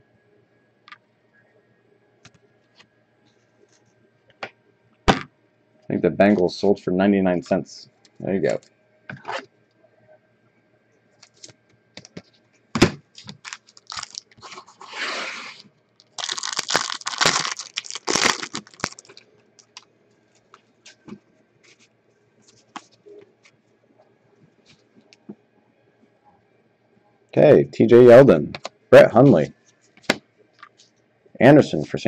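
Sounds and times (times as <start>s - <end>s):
packaging crinkling: 11.2s - 12.2s, 13.1s - 14.9s, 15.5s - 19.9s
card packaging tearing: 13.2s - 19.8s.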